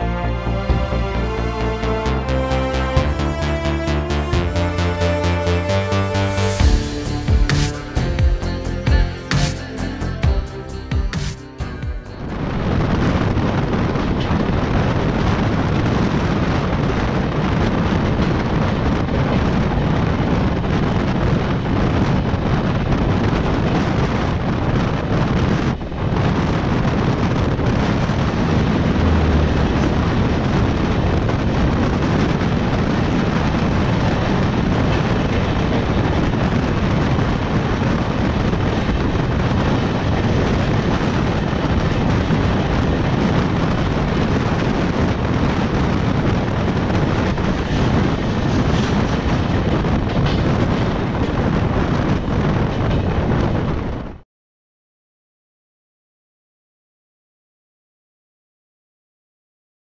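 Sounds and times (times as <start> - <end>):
passenger train rumbling past: 0.0 - 15.6, 27.8 - 53.8
wind buffeting microphone: 11.6 - 54.2.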